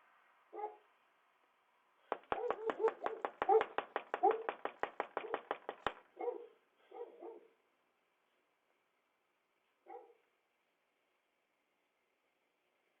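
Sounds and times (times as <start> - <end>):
dog barking: 0.5 - 0.8, 2.3 - 4.5, 6.2 - 7.6, 9.8 - 10.2
frantic pounding on a door: 2.1 - 6.1.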